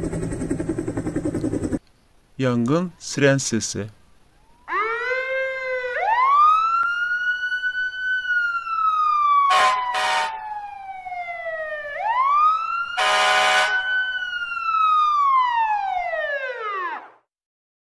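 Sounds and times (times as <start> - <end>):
fire siren wailing: 4.4 - 17.3
horn blasts: 9.5 - 10.4, 13.0 - 14.1.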